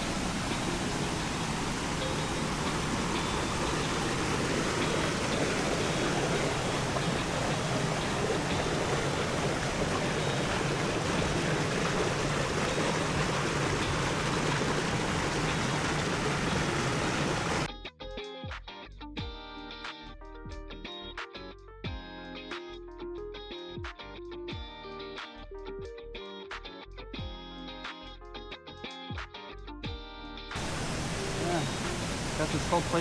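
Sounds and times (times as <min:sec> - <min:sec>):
guitar music: 0:00.0 - 0:16.9, 0:17.7 - 0:33.0
waterfall rushing: 0:00.0 - 0:17.7, 0:30.6 - 0:33.0.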